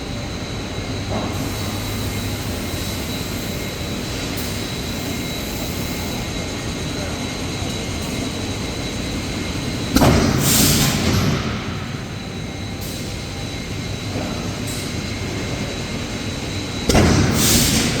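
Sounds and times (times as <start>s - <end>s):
forging machinery running: 0.6s - 18.0s
hiss: 10.0s - 11.9s, 16.9s - 18.0s.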